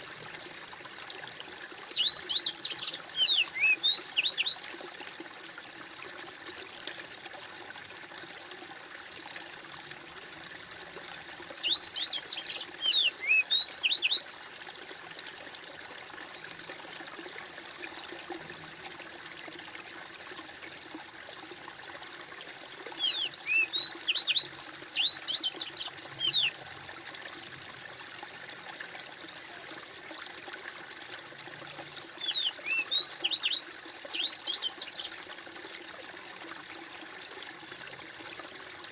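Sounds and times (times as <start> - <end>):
water trickling and gurgling: 0.0 - 38.9
small bird chirping: 1.6 - 4.6, 11.3 - 14.2, 23.0 - 26.5, 32.2 - 35.2.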